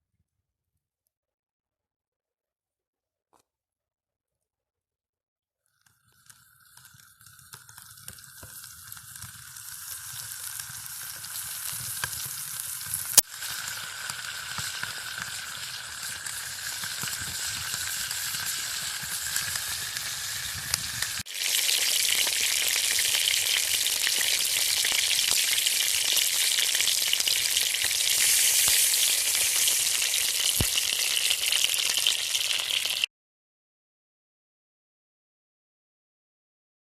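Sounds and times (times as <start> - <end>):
meat sizzling: 6.0 - 33.1.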